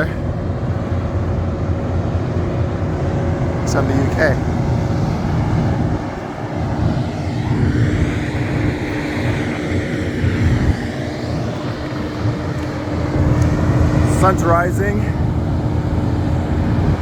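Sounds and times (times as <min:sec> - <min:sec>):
low uneven rumble: 0:00.0 - 0:17.0
steady mechanical drone: 0:00.0 - 0:17.0.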